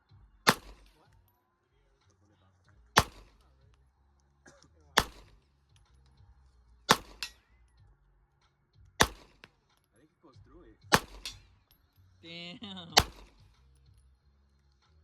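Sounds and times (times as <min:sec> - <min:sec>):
handgun shots: 0:00.5 - 0:01.1, 0:03.0 - 0:03.5, 0:05.0 - 0:05.4, 0:06.9 - 0:07.5, 0:09.0 - 0:09.6, 0:10.9 - 0:11.6, 0:13.0 - 0:13.6.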